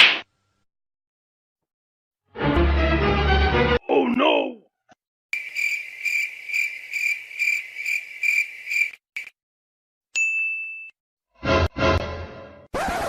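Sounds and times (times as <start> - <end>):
cricket chirping trill: 5.4 - 9.3.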